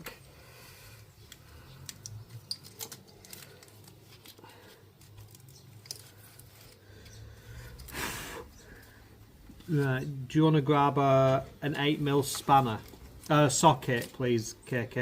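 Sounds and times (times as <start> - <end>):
hands handling small parts: 1.2 - 8.0, 11.8 - 14.5.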